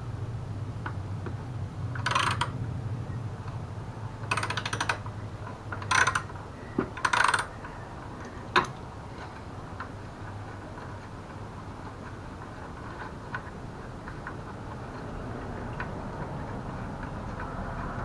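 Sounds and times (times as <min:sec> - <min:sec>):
ratchet wrench clicking: 0:02.0 - 0:02.6, 0:04.3 - 0:05.1, 0:05.8 - 0:06.3, 0:07.0 - 0:07.5.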